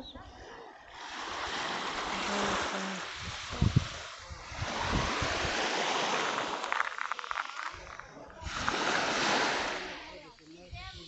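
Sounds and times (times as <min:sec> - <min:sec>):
sea surf washing onto beach: 0:00.8 - 0:10.8
wind buffeting microphone: 0:02.3 - 0:06.7, 0:10.6 - 0:11.0.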